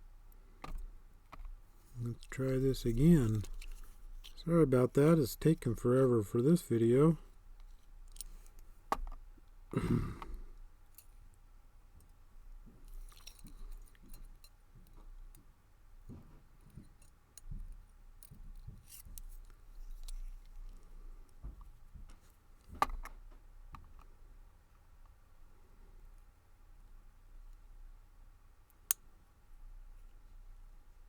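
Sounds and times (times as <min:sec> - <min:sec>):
small metal clicks and taps: 0:00.6 - 0:04.4, 0:16.1 - 0:24.1.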